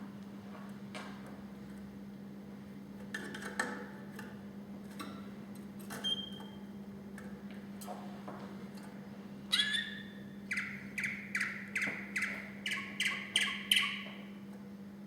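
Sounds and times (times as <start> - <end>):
canary chirps and clicks: 9.5 - 14.3.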